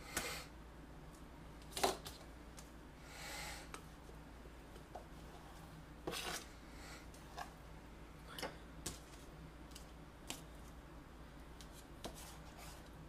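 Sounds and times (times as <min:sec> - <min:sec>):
faint low hum: 0:00.0 - 0:13.0.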